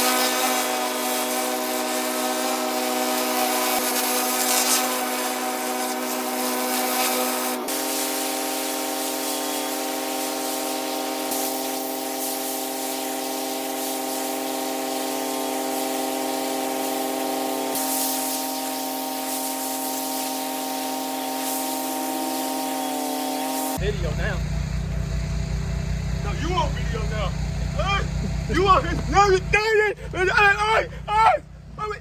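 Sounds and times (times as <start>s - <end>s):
water spray hissing: 0.0s - 24.2s
pressure washer drone: 0.0s - 32.0s.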